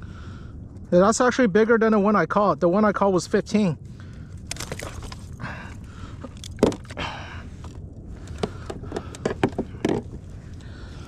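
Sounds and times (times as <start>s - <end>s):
low steady rumble: 0.0s - 11.0s
knocks and scrapes on kayak: 8.2s - 10.3s.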